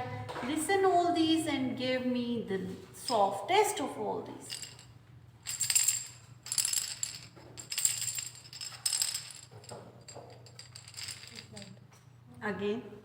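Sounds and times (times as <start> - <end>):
cylinders rattling when shaken: 4.4 - 11.8.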